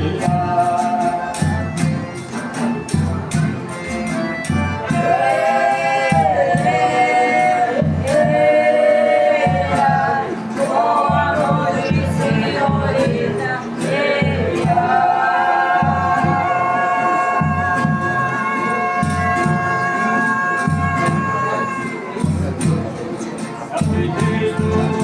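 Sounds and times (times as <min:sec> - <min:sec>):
men singing together: 0:00.0 - 0:01.8, 0:04.8 - 0:21.8, 0:23.8 - 0:25.0
percussion beat: 0:00.0 - 0:25.0.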